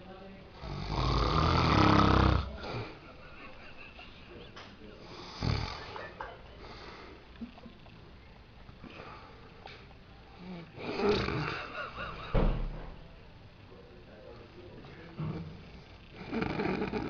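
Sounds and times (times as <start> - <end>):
man snoring loudly: 0.6 - 3.0, 5.0 - 5.9, 10.4 - 11.7, 15.2 - 17.0
quiet breathing: 4.3 - 11.7, 13.8 - 17.0.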